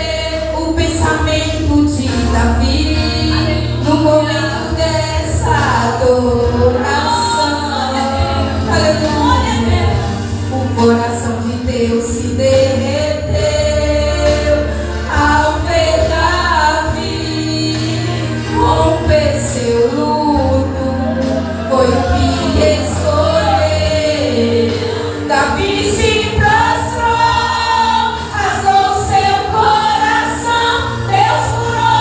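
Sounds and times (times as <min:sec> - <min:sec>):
instrumental backing: 0:00.0 - 0:32.0
steady bass: 0:00.0 - 0:32.0
vocal group singing gospel: 0:00.0 - 0:32.0.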